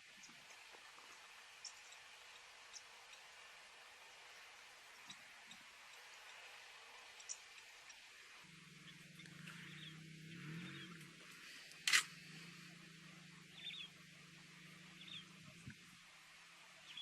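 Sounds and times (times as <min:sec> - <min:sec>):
low steady hum: 0:00.0 - 0:17.0
sharp click: 0:11.8 - 0:12.1.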